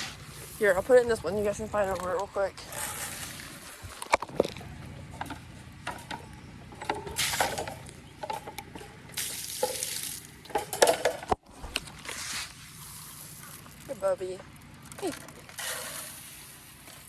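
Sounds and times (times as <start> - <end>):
feed buckets clattering: 0.0 - 11.4
feed pouring: 12.0 - 17.0.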